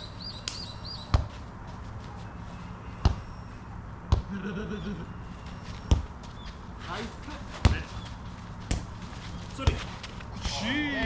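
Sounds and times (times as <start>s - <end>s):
ball kicked thudding: 1.1s - 1.4s, 3.0s - 3.3s, 4.1s - 4.3s, 5.9s - 6.4s, 7.5s - 8.0s, 8.6s - 10.6s.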